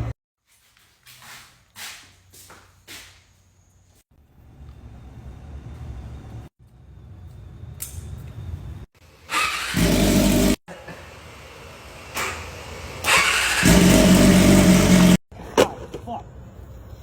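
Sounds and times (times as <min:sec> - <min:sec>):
engine running loudly: 0:09.6 - 0:10.6, 0:13.0 - 0:15.2.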